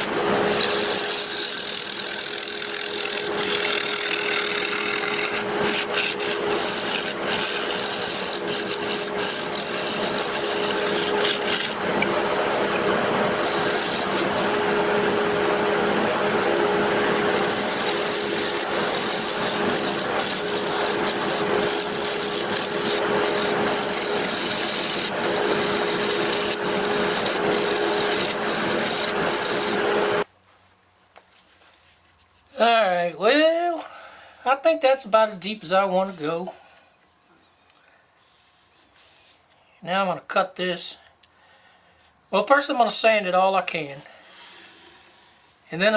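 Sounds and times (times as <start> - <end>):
lathe humming: 0.0 - 30.3
turning tool scraping wood: 0.0 - 30.3, 42.8 - 45.6.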